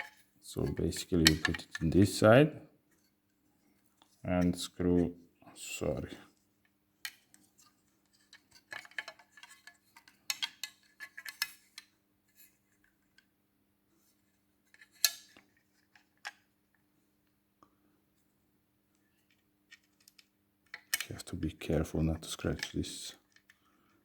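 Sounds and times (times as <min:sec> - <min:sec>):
light clicks and taps of parts: 0:00.0 - 0:02.1, 0:06.6 - 0:11.9, 0:18.9 - 0:24.0.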